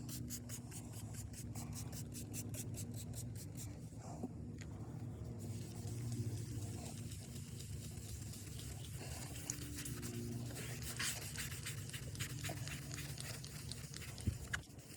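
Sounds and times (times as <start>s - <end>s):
sandpaper rubbing on plastic: 0.0s - 3.7s, 5.4s - 14.9s.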